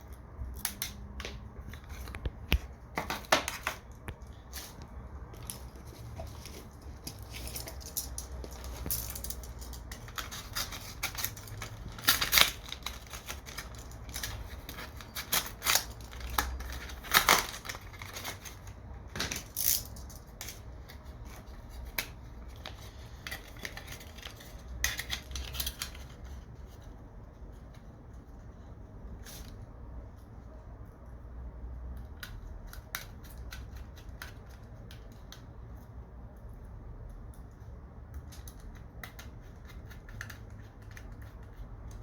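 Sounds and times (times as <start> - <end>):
small parts clicking and scraping: 3.0 - 26.9.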